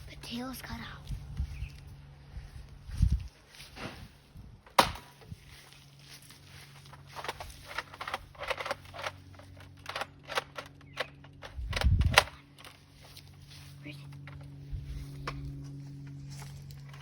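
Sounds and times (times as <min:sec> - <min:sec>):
short clicks and crunches: 0:06.6 - 0:13.3.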